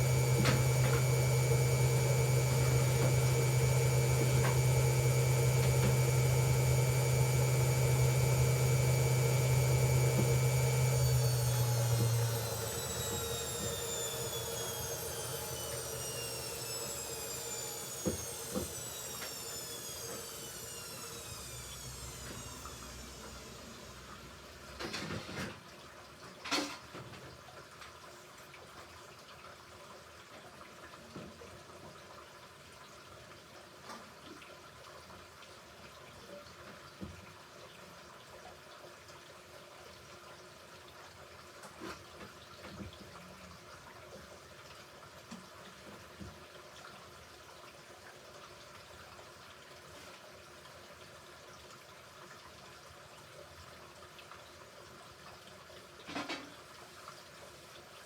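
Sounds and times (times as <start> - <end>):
washing machine water sloshing: 0.0 - 25.4.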